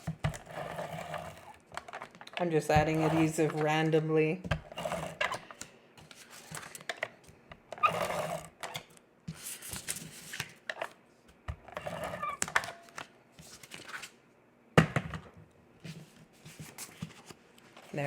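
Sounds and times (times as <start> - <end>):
paper rustling and scraping: 6.0 - 6.8, 12.8 - 14.2, 15.8 - 18.0.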